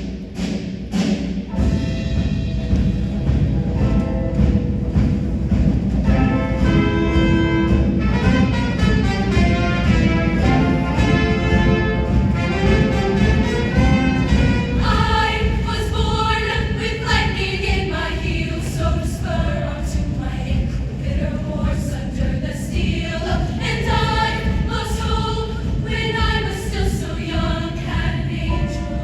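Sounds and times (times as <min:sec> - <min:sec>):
musical accompaniment: 0:00.0 - 0:18.0
choir singing in chorus: 0:09.2 - 0:29.0.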